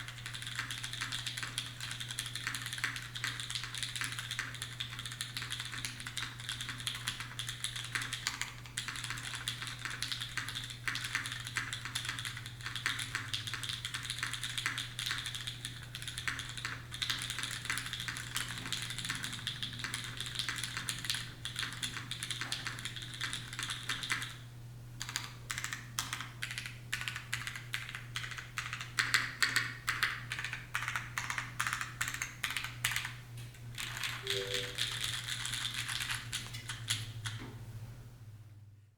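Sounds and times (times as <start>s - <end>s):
mechanical keyboard typing: 0.0s - 24.4s, 25.0s - 33.2s, 33.8s - 37.4s
low steady hum: 34.2s - 35.2s.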